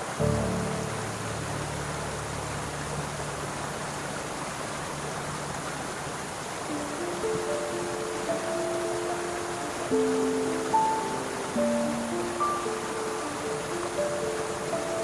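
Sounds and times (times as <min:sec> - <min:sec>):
soft piano music: 0:00.0 - 0:15.0
stream rushing: 0:00.0 - 0:15.0.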